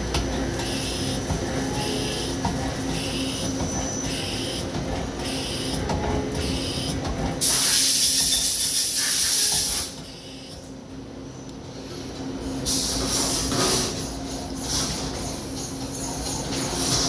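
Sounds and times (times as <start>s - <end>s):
loud hiss: 7.4s - 9.9s.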